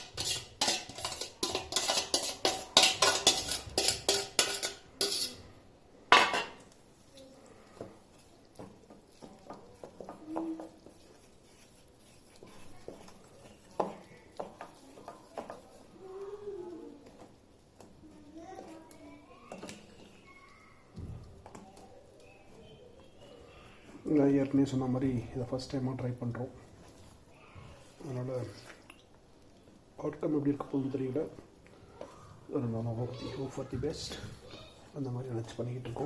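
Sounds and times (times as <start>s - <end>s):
utensil clinking against bowl: 0.0s - 5.4s.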